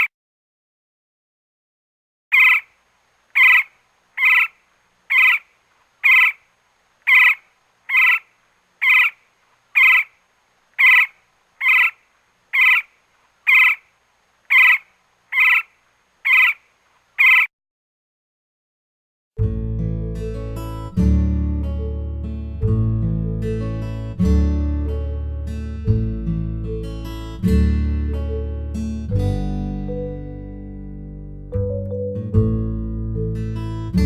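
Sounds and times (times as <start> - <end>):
woodpecker chirping: 2.3 - 17.5.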